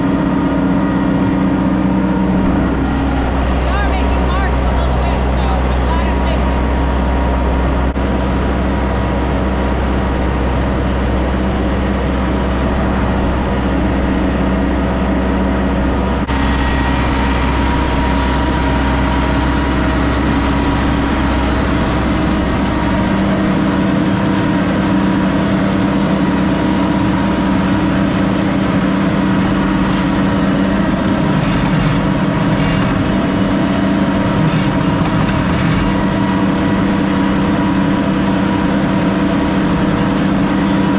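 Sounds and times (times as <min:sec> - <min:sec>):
tractor engine running: 0:00.0 - 0:40.9.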